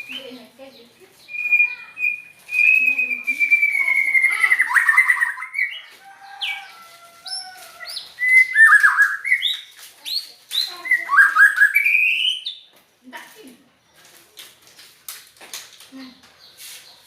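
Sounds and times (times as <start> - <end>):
bird singing whistled notes: 0.0 - 0.5, 1.2 - 5.8, 7.3 - 12.7.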